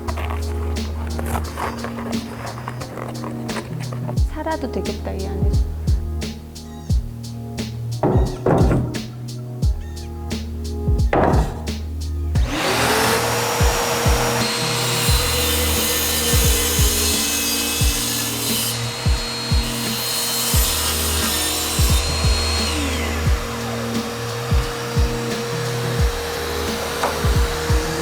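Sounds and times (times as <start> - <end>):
power tool working wood: 0.0 - 5.0, 8.0 - 9.2, 11.1 - 11.8, 12.4 - 28.0
music with steady beat: 3.4 - 28.0.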